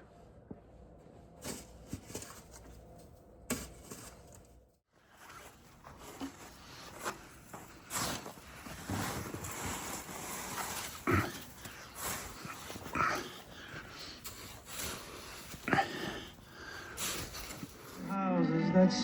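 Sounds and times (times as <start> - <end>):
snow shovel scraping snow: 7.8 - 12.8.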